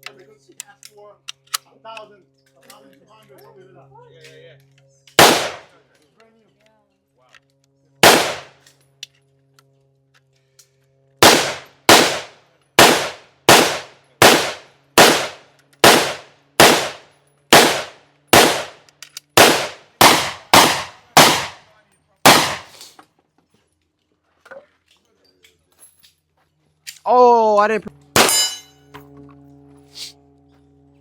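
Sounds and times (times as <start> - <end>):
gunshots with echo: 5.2 - 5.7, 8.0 - 8.5, 11.2 - 18.8, 19.4 - 21.6, 22.3 - 22.8, 28.2 - 28.6.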